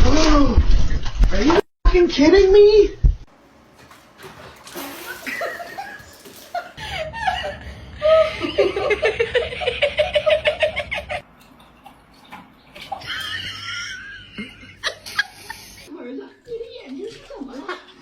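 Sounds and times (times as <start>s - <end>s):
person laughing: 5.1s - 11.2s.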